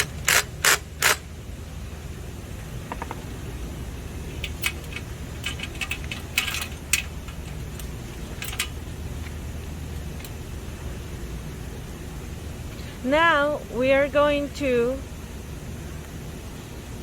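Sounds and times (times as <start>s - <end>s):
steady low hum: 0.0s - 17.0s
metal parts clinking: 4.3s - 8.8s.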